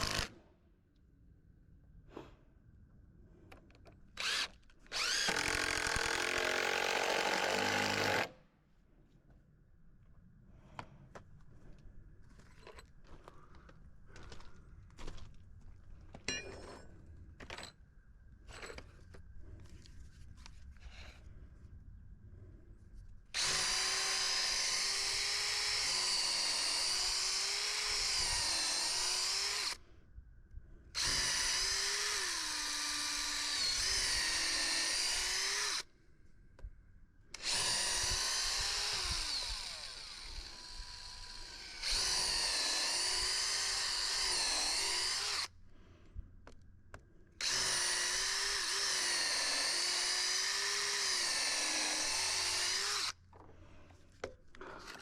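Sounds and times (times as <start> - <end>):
power drill drilling into wood: 0.0 - 0.3, 4.2 - 8.3, 23.4 - 29.8, 31.0 - 35.8, 37.4 - 45.5, 47.4 - 53.2.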